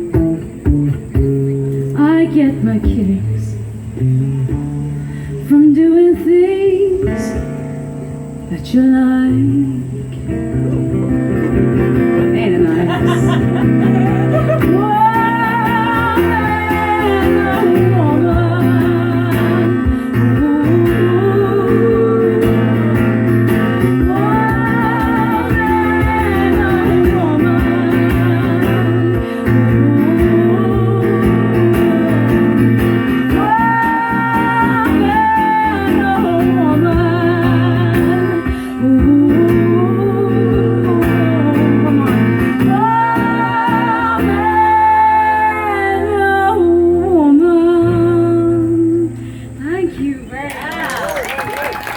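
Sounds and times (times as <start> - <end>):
strummed guitar: 0.0 - 49.1
woman singing wordless notes: 1.8 - 3.8, 5.4 - 50.4.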